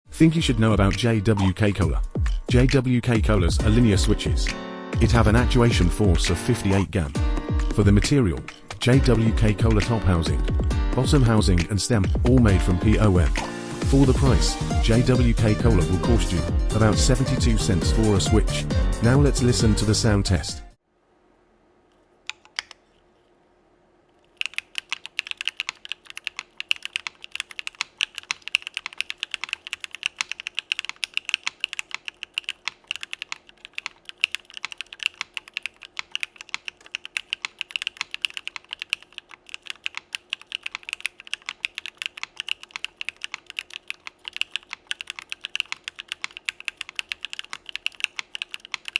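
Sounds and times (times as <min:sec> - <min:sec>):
typing on mechanical keyboard: 0:24.3 - 0:48.9.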